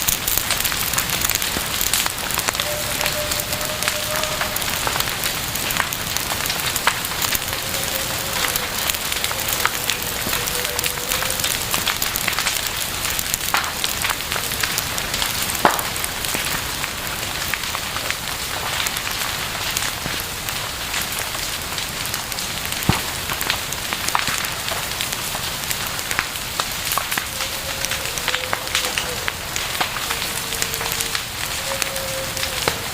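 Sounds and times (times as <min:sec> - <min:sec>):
campfire crackling: 0:00.0 - 0:32.9
faint wavering whistle: 0:02.6 - 0:05.0, 0:30.6 - 0:32.7.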